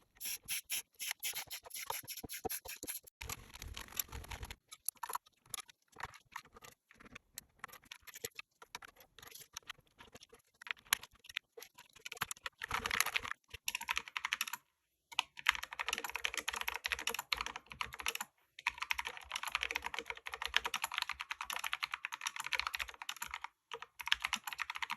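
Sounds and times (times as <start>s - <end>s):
mechanical keyboard typing: 11.9s - 14.6s, 15.2s - 24.9s.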